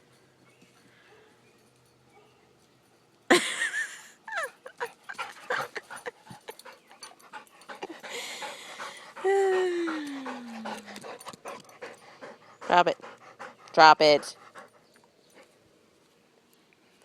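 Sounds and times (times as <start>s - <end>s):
dog panting rapidly: 4.8s - 15.5s
dog whining: 9.2s - 11.2s.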